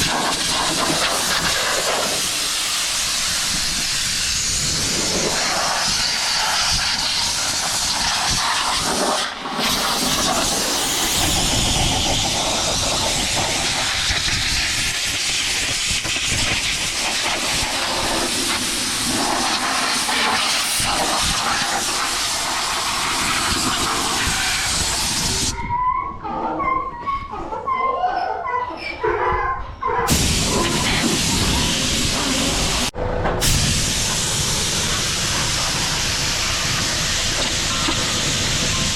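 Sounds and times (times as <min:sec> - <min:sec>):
compressed air hose hissing: 0:00.0 - 0:25.5, 0:30.1 - 0:38.9.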